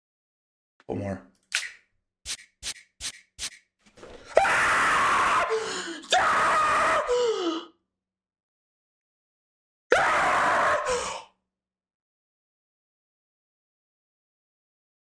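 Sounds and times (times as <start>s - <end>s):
quick clicks: 1.4s - 3.7s
man screaming: 4.4s - 7.2s, 9.9s - 11.0s.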